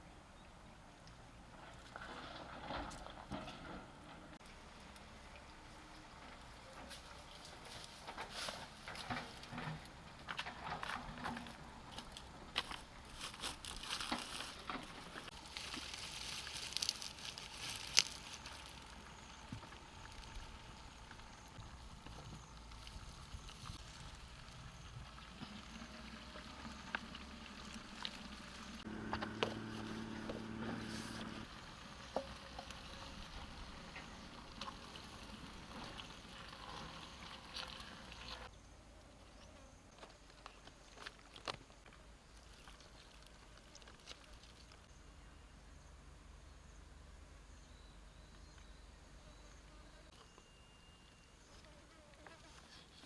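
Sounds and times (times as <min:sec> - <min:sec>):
insect buzzing: 0:51.4 - 0:53.0.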